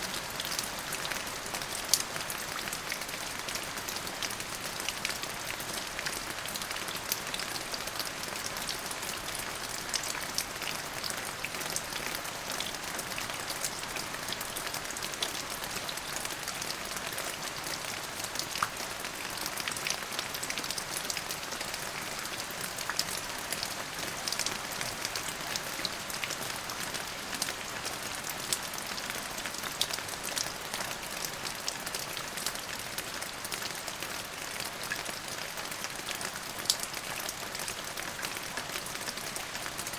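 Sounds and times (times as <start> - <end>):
rain falling: 0.0 - 39.9.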